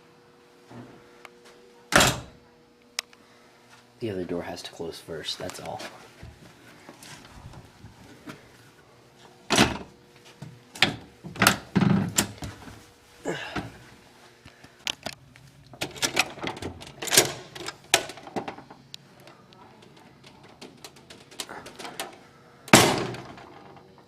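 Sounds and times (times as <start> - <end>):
doors swinging and shutting: 1.9 - 2.4, 9.4 - 9.9, 10.7 - 12.8, 15.8 - 18.8, 19.8 - 23.8.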